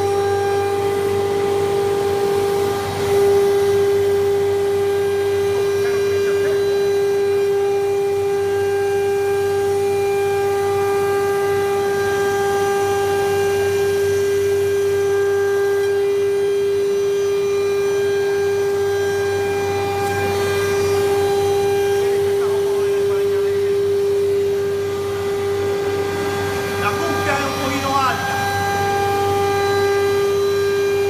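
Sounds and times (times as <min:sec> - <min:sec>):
low machine hum: 0:00.0 - 0:31.0
router spindle high whine: 0:00.0 - 0:31.0.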